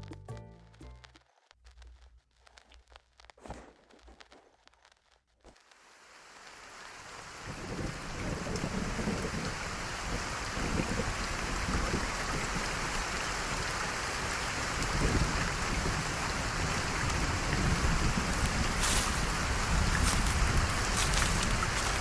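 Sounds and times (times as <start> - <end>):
rain falling: 0.7 - 22.0
wind on microphone: 7.5 - 13.6, 14.9 - 22.0.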